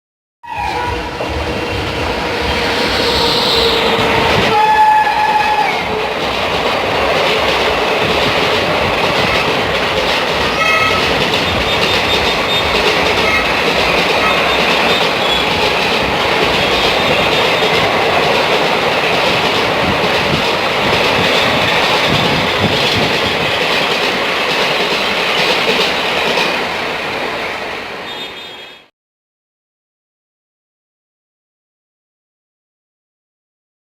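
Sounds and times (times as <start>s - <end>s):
locomotive horn blasts: 0.4s - 1.9s, 2.8s - 6.0s, 10.6s - 13.5s, 28.1s - 28.9s
train rushing past: 0.5s - 28.9s.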